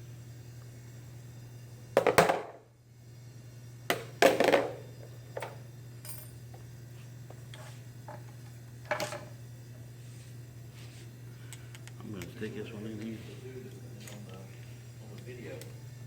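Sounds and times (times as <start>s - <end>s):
low electrical hum: 0.0s - 16.0s
metal tools clattering on workbench: 8.9s - 9.3s.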